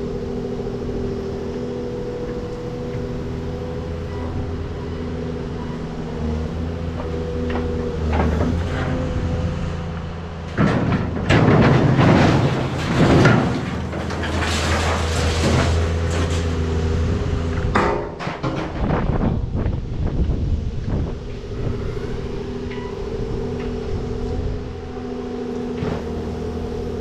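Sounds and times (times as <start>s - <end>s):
rattling and scraping: 6.9s - 19.5s.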